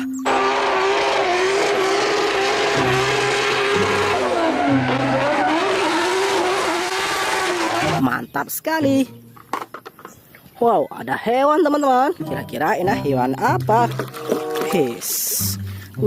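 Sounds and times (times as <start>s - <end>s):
race car engine at high revs: 0.0s - 8.0s.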